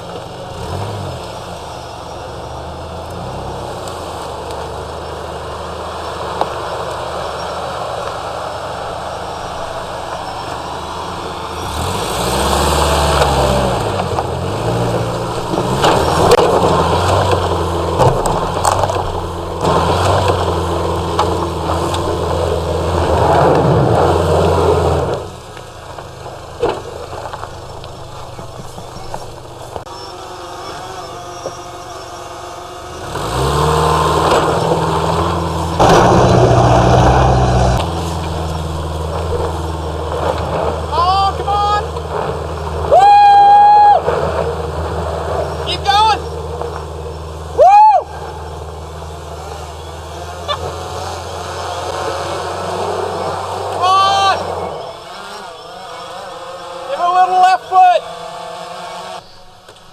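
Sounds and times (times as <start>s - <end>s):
car engine revving: 0.0s - 59.9s
tyres scrabbling: 0.0s - 59.9s
knocks: 15.6s - 22.1s.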